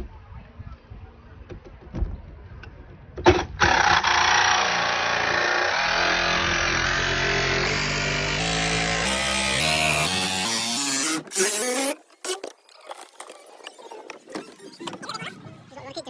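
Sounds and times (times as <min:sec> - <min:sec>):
jigsaw cutting sheet metal: 0:03.6 - 0:15.3.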